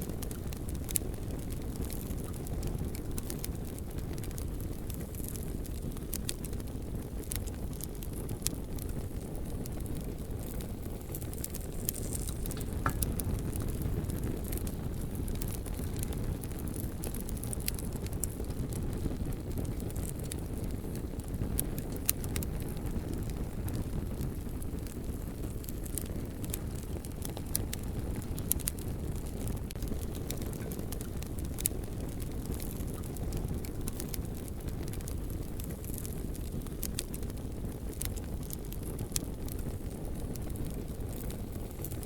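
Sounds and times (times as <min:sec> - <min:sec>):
fire crackling and popping: 0:00.0 - 0:42.0
fire rumbling: 0:00.0 - 0:42.0.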